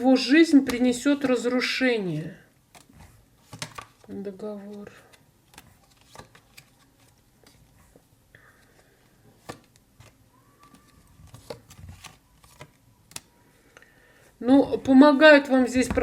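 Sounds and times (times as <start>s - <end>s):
cards clicking and tapping on table: 2.7s - 4.0s, 9.4s - 13.3s.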